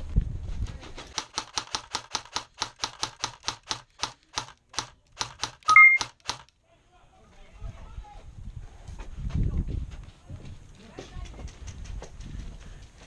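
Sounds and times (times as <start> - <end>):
two-tone electronic beep: 5.7 - 6.0.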